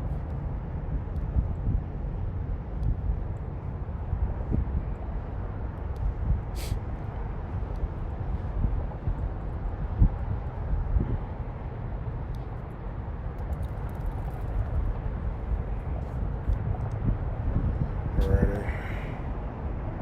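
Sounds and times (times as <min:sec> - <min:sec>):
short hiss: 0:06.6 - 0:06.8.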